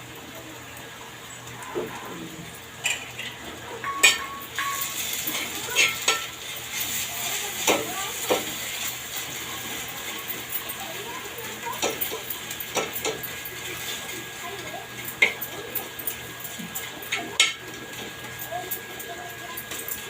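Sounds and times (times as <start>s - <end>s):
food sizzling in a pan: 1.2s - 20.0s
spatula scraping and knocking pan: 3.8s - 7.0s.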